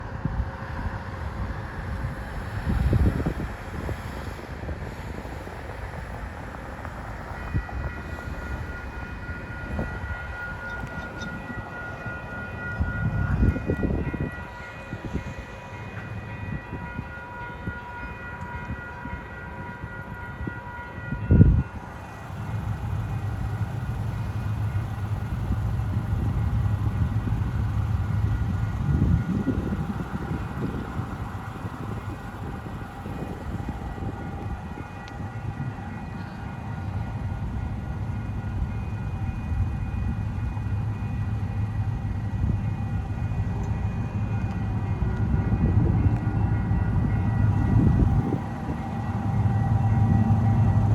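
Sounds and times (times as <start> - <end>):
diesel locomotive rumble: 0.0 - 50.9
locomotive horn: 7.1 - 41.7.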